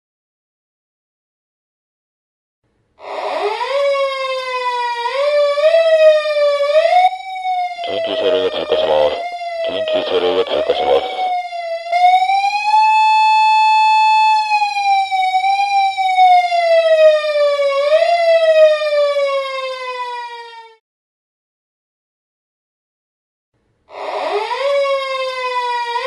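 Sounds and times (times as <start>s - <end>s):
police siren wailing: 3.4s - 20.8s
voice over loudspeaker: 7.8s - 11.4s.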